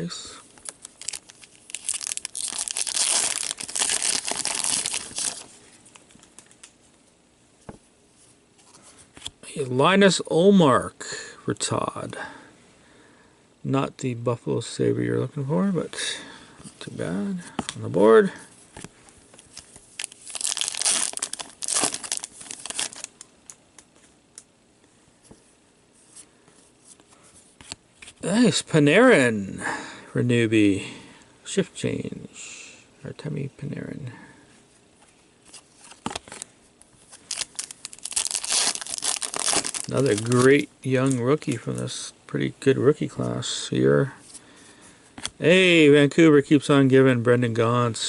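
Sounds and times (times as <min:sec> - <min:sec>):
foil wrapper tearing and crinkling: 0:00.6 - 0:05.5, 0:19.9 - 0:23.2, 0:37.1 - 0:41.2
card handling: 0:00.6 - 0:06.7, 0:18.8 - 0:24.1, 0:35.4 - 0:41.9.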